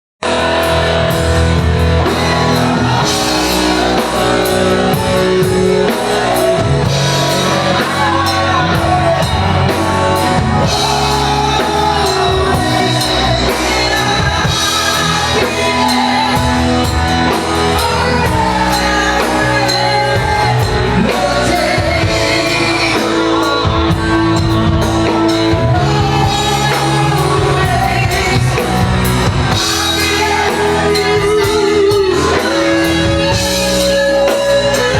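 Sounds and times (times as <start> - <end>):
lead singer singing: 0.2 - 34.9
live rock band playing: 0.2 - 34.9.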